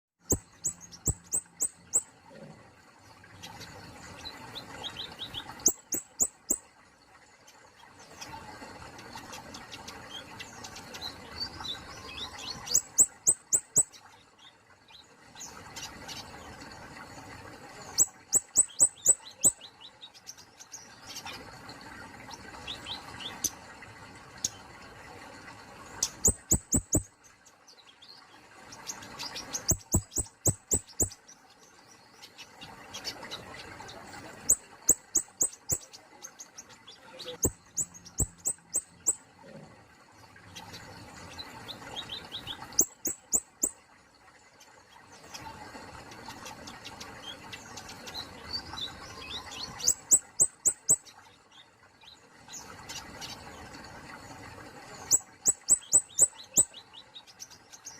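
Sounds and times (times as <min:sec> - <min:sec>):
songbird clicking calls: 0:00.2 - 0:02.1, 0:04.9 - 0:06.6, 0:12.7 - 0:14.0, 0:18.0 - 0:19.7, 0:26.0 - 0:27.1, 0:29.0 - 0:31.3, 0:34.4 - 0:36.4, 0:37.2 - 0:39.2, 0:42.7 - 0:43.8, 0:49.8 - 0:51.1, 0:55.1 - 0:57.0
soft bird twittering: 0:00.2 - 0:02.2, 0:03.3 - 0:06.7, 0:07.4 - 0:16.3, 0:17.8 - 0:21.4, 0:26.0 - 0:39.3, 0:40.5 - 0:43.8, 0:44.6 - 0:53.5, 0:54.9 - 0:57.9.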